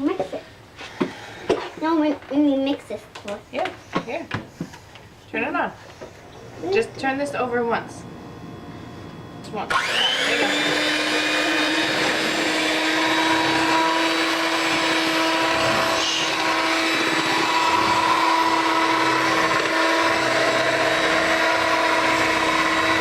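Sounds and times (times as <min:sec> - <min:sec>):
electric kitchen mixer running: 0:06.9 - 0:23.0.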